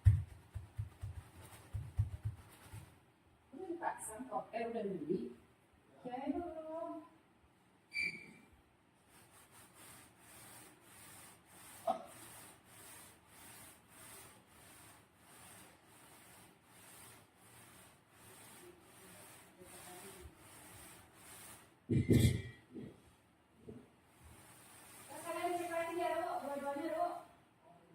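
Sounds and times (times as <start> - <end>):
faint rhythmic rubbing: 0.0 - 3.0, 9.0 - 27.3.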